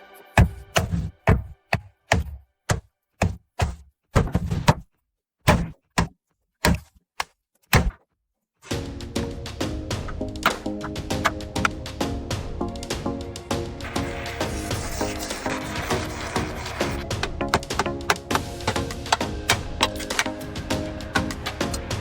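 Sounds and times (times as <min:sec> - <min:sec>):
music: 0:00.0 - 0:02.0, 0:08.7 - 0:22.0.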